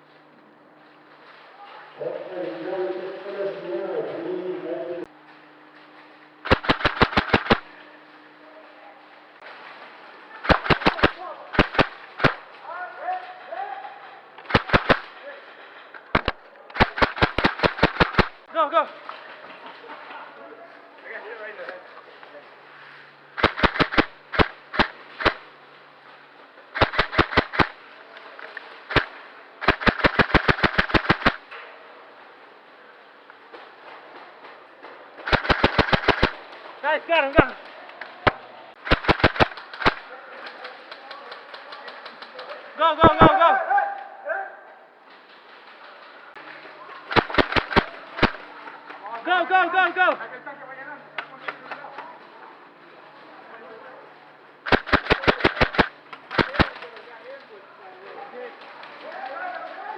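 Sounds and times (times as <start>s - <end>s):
airsoft gun shots: 6.4s - 7.8s, 10.4s - 12.5s, 14.4s - 15.2s, 16.1s - 18.5s, 23.4s - 25.5s, 26.8s - 27.8s, 28.9s - 31.5s, 35.2s - 36.5s, 38.2s - 40.1s, 47.1s - 48.5s, 54.7s - 56.8s.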